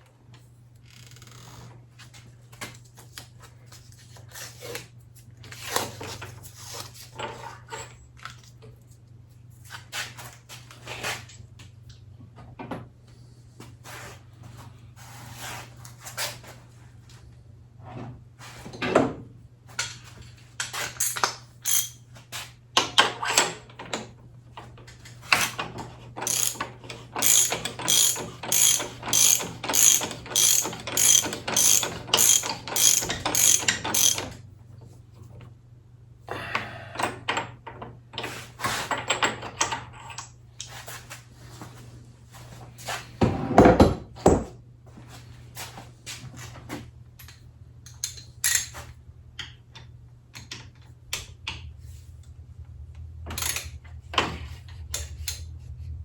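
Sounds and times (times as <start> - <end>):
ratchet wrench clicking: 21.0 - 22.0, 26.2 - 34.3.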